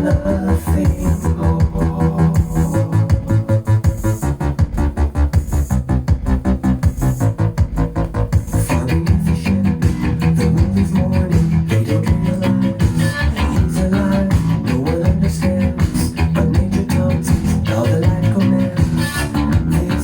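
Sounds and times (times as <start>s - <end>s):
synth-pop instrumental: 0.0s - 20.0s.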